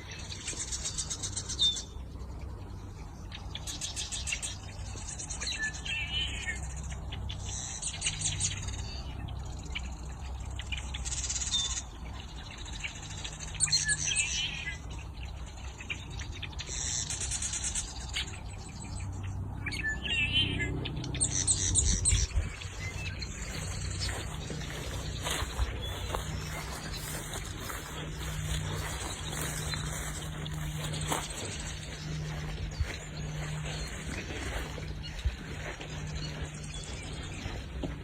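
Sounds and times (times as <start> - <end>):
birds chirping and trilling: 0.0 - 38.0
steady low rumble: 11.8 - 38.0.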